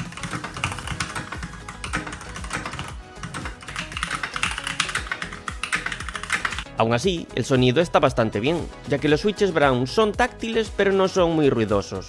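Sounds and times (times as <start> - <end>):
mechanical keyboard typing: 0.0 - 6.7
background music: 0.0 - 12.0.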